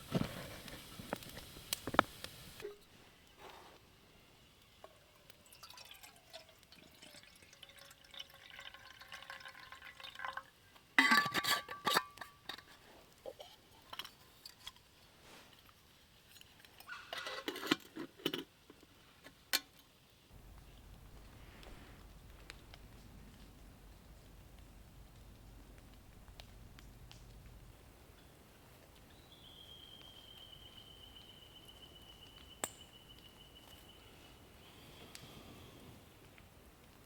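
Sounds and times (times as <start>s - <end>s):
cookware clinking and clattering: 11.0s - 14.8s, 16.4s - 18.6s.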